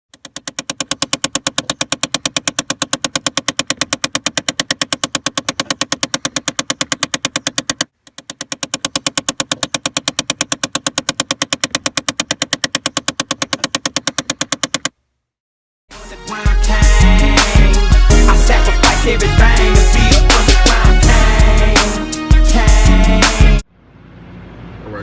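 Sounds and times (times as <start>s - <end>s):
rapid even clicking: 0.1s - 15.0s.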